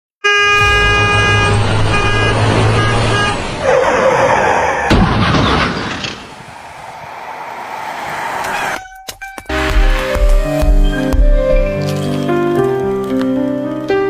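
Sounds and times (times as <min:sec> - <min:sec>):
horn sounding: 0:00.2 - 0:04.0
low engine hum: 0:00.6 - 0:03.6
sudden crash with rumble: 0:00.6 - 0:03.6, 0:04.9 - 0:07.1
rushing noise: 0:00.6 - 0:05.0, 0:05.8 - 0:08.8.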